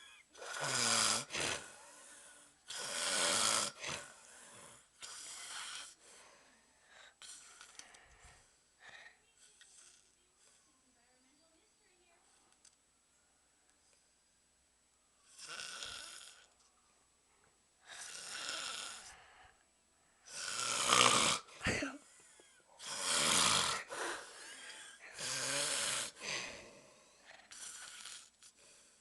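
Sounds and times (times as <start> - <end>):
man snoring loudly: 0.4 - 1.7, 2.7 - 4.1, 15.4 - 16.5, 17.9 - 19.1, 20.3 - 21.5, 22.8 - 24.4, 25.1 - 26.6.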